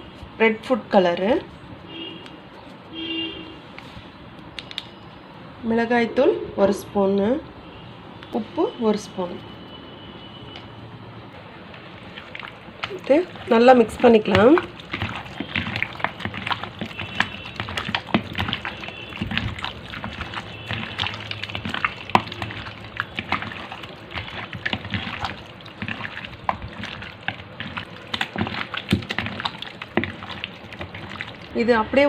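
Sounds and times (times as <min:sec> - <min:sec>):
wet squelching of meat in marinade: 0:10.4 - 0:31.6.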